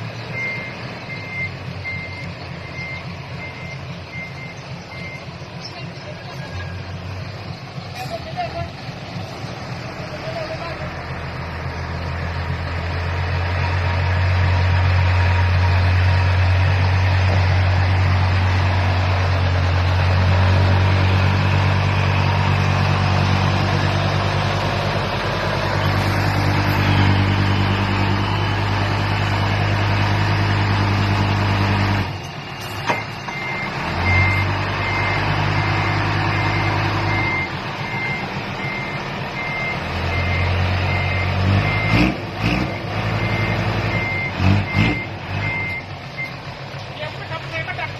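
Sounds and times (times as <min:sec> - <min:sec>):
diesel engine running: 0:00.0 - 0:47.9
reversing alarm beeping: 0:00.2 - 0:05.4, 0:32.0 - 0:46.5.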